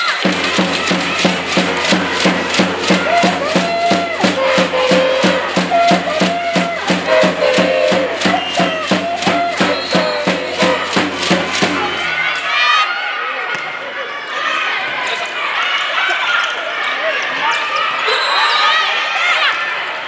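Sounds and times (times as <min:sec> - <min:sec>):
fast steady drum beat: 0:00.0 - 0:12.4
crowd chanting in unison: 0:00.0 - 0:12.8.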